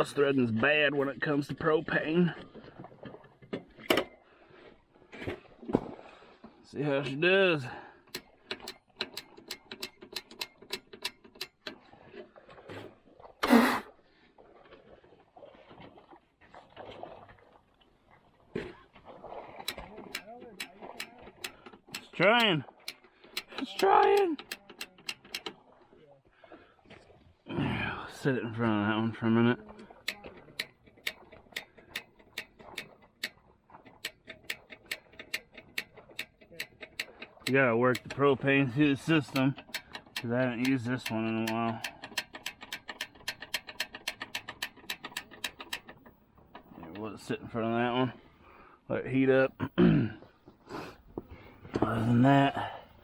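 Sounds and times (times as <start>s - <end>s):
heater igniter clicking: 8.1s - 11.8s, 19.6s - 25.5s, 30.0s - 48.1s.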